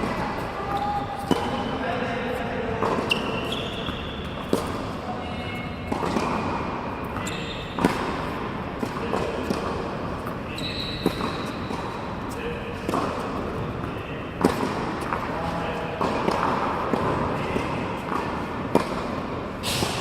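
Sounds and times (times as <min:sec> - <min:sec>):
tennis balls bouncing: 0:00.0 - 0:01.8, 0:02.7 - 0:05.0, 0:05.6 - 0:20.0
short high squeaks: 0:03.0 - 0:04.4, 0:07.2 - 0:07.8, 0:10.5 - 0:11.7
tennis ball hits echoing: 0:05.9 - 0:07.2, 0:07.8 - 0:10.4, 0:12.8 - 0:15.3, 0:16.0 - 0:20.0.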